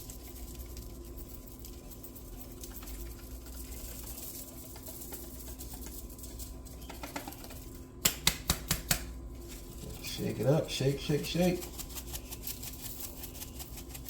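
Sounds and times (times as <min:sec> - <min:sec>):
seasoning shaker patter: 0:00.0 - 0:14.0
steady low hum: 0:00.0 - 0:14.0.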